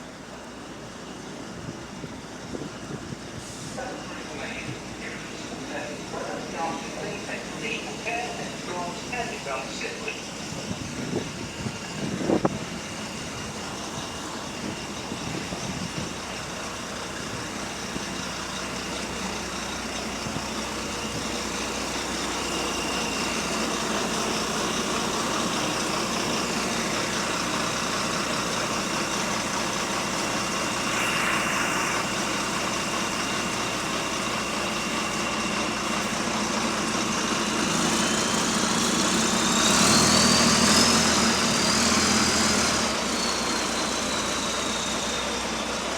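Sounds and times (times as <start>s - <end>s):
bus engine running: 0.0s - 45.9s
high whine rising in pitch: 28.9s - 35.5s.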